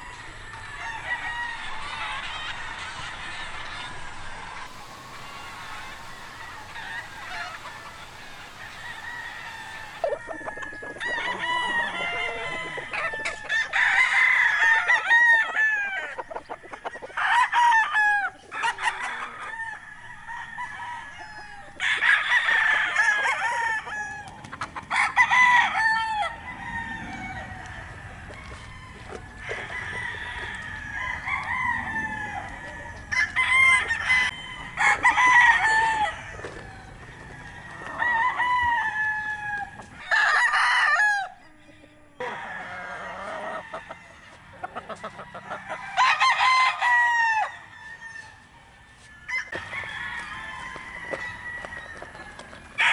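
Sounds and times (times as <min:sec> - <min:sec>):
chickens clucking: 0:00.0 - 0:46.7, 0:48.2 - 0:52.9
murmuring fowl: 0:00.0 - 0:52.9
roosters crowing: 0:00.0 - 0:52.9.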